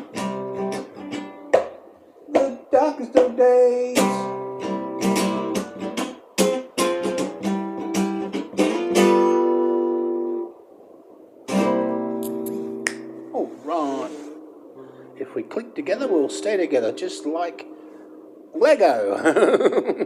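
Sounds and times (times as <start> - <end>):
guitar strumming chords: 0.0 - 1.7, 2.4 - 10.5, 11.5 - 13.3, 16.0 - 18.0.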